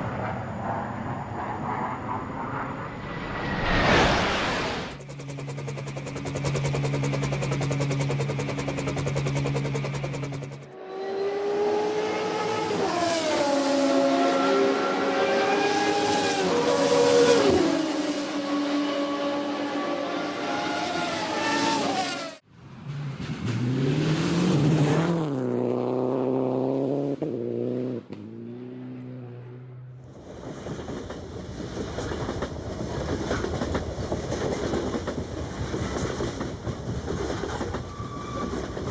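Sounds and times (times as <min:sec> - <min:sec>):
car passing at speed: 0:00.0 - 0:05.0, 0:10.8 - 0:30.8.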